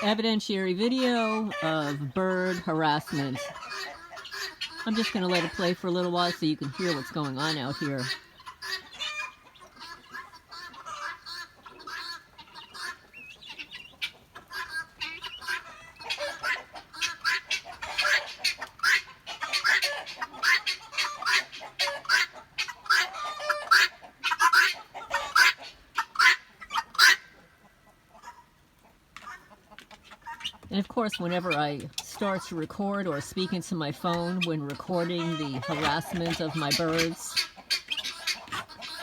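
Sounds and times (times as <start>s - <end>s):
chickens and guinea fowl cackling: 0.0s - 39.0s.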